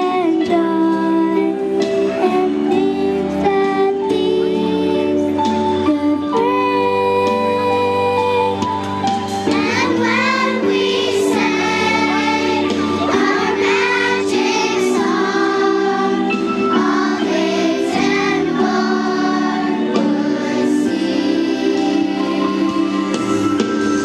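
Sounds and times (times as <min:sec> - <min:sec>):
children's choir singing: 0:09.4 - 0:23.5.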